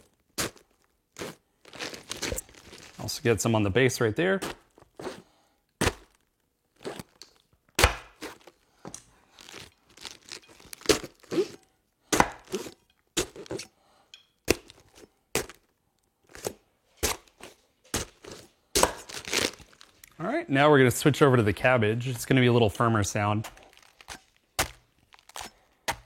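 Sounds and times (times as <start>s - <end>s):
knife stabbing into lettuce: 0.4s - 2.4s, 4.4s - 5.2s, 5.8s - 6.2s, 7.8s - 8.5s, 9.4s - 13.7s, 14.5s - 15.6s, 16.3s - 19.6s, 23.4s - 26.0s.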